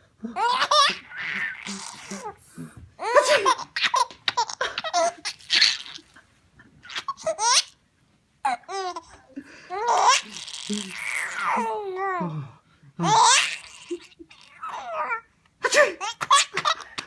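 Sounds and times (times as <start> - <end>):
baby laughing and squealing: 0.4 - 2.4, 3.0 - 6.2, 6.8 - 7.8, 8.5 - 12.0, 13.0 - 15.2.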